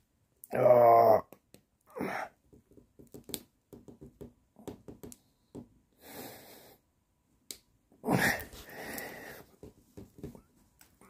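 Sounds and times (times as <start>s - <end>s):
man straining and breathing heavily: 1.9s - 2.4s, 8.0s - 9.8s.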